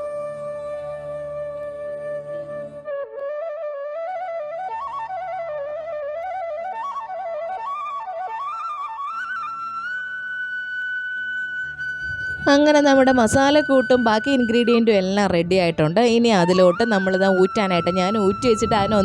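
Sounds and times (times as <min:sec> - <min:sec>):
flute-like melody: 0:00.0 - 0:19.0
soft low drone: 0:11.8 - 0:13.5, 0:17.6 - 0:19.0.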